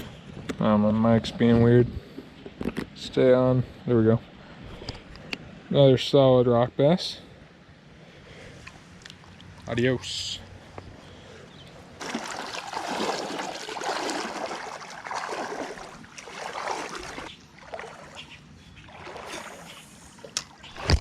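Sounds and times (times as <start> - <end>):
water sloshing around wading legs: 8.6 - 11.0, 11.9 - 21.0.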